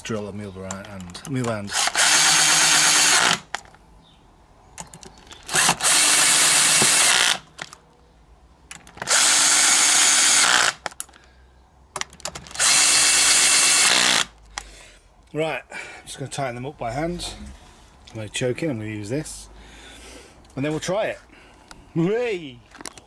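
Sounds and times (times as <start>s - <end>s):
handling clicks: 0.6s - 1.6s
cordless drill driving screws: 1.7s - 3.6s, 5.4s - 7.5s, 9.0s - 10.9s, 12.5s - 14.4s.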